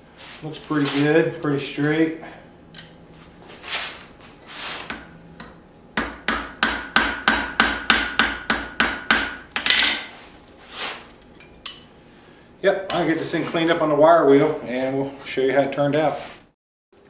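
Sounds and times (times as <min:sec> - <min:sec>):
hammer striking anvil: 0:04.9 - 0:10.1.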